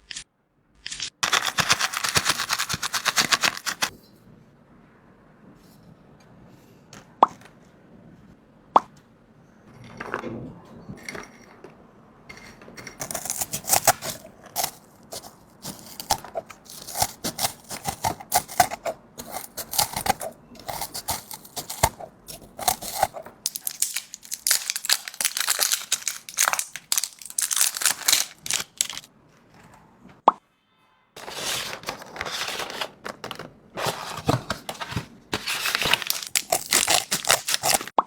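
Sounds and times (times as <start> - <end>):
packaging crinkling and tearing: 0.8 - 3.9, 13.0 - 29.1, 31.2 - 38.0.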